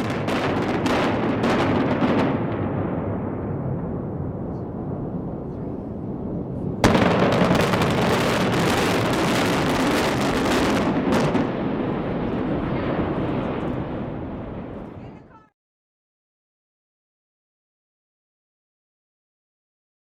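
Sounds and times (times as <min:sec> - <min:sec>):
explosive blast: 0:00.0 - 0:15.0
building collapse rumbling: 0:00.0 - 0:15.5.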